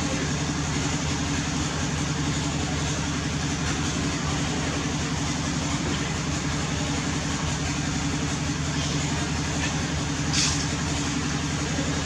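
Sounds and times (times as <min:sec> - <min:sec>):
short hiss: 0:10.3 - 0:10.7.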